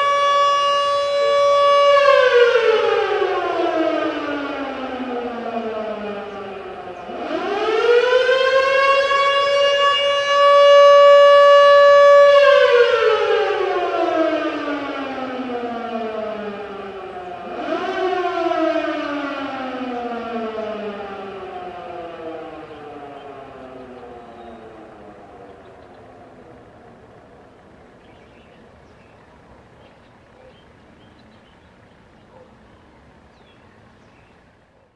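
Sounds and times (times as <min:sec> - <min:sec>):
outdoor warning siren wailing: 0:00.0 - 0:33.4
small birds chirping: 0:06.0 - 0:07.2, 0:22.6 - 0:34.9
low outdoor rumble and hiss: 0:20.0 - 0:34.9.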